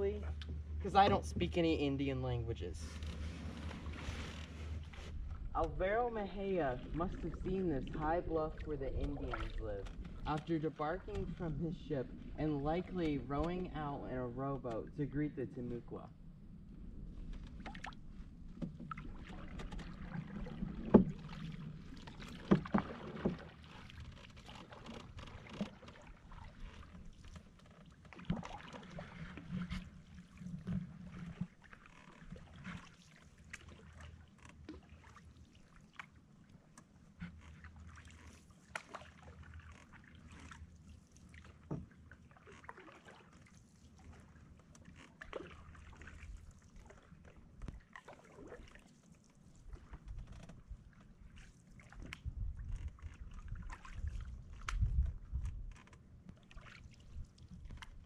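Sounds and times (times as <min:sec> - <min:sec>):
paddle pulling through water: 0:00.0 - 0:58.0
splashes and drips: 0:06.2 - 0:11.5, 0:17.4 - 0:58.0.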